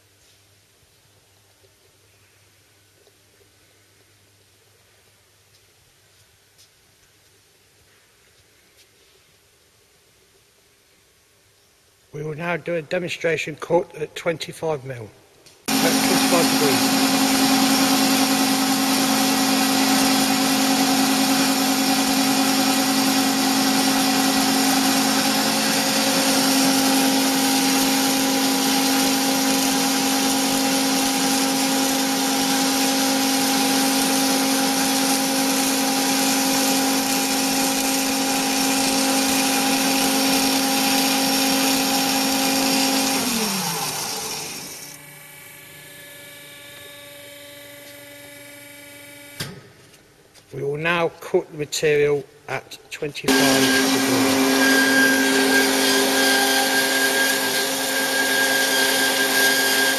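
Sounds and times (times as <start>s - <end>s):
bandsaw running: 15.7s - 49.4s, 53.3s - 59.9s
motor winding down: 15.7s - 49.4s, 53.3s - 59.9s.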